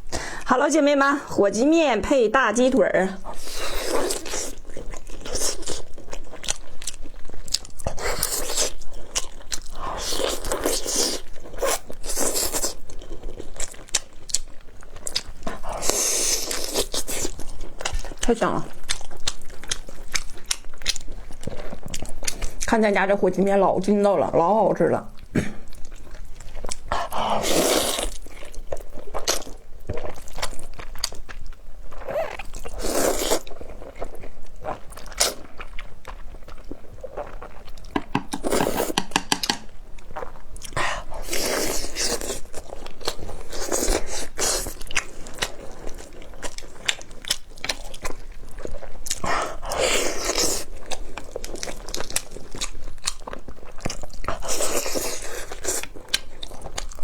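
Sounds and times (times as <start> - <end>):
wet chewing: 3.1 - 23.7, 25.1 - 57.0
slurping noodles: 27.0 - 28.2, 32.1 - 33.5, 38.3 - 39.2.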